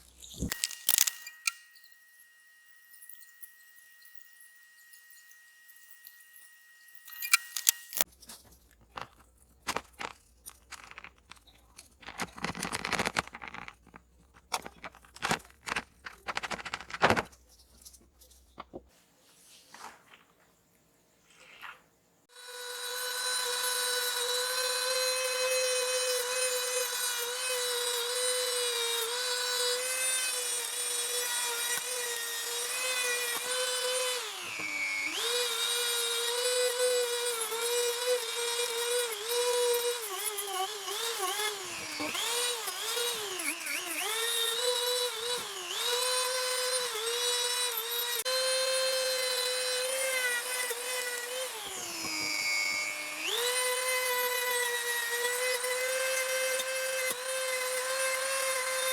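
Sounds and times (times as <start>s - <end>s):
high-speed power tool whining: 0.0s - 8.1s, 22.3s - 58.9s.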